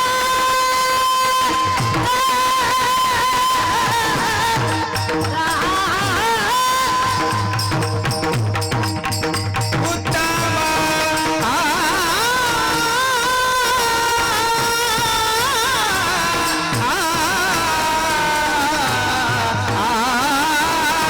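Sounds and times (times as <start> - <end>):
person singing: 0.0 - 8.4, 9.8 - 21.0.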